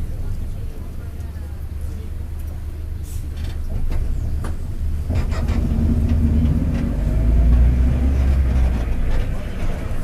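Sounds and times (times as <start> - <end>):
bus diesel engine running: 0.0 - 10.0
driveshaft rumbling: 5.0 - 10.0.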